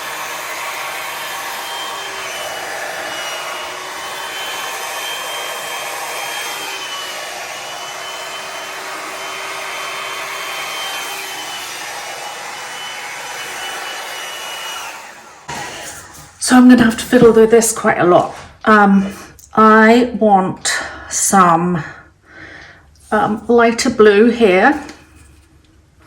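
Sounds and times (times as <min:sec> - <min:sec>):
hair dryer running with high whine: 0:00.0 - 0:17.8.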